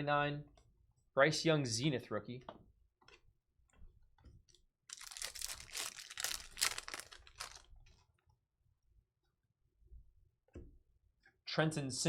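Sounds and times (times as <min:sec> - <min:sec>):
foil wrapper crinkling: 0:04.9 - 0:07.7.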